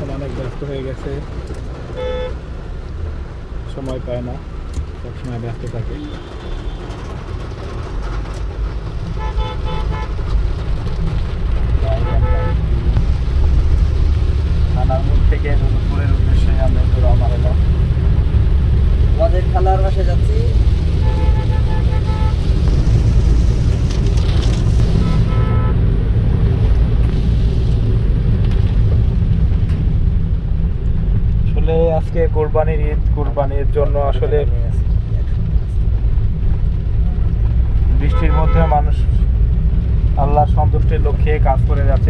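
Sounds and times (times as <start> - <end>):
car driving rumble from inside: 0.0 - 42.0
car horn toots: 1.9 - 2.4, 9.1 - 10.3, 11.8 - 12.7, 21.0 - 22.5, 24.9 - 25.8.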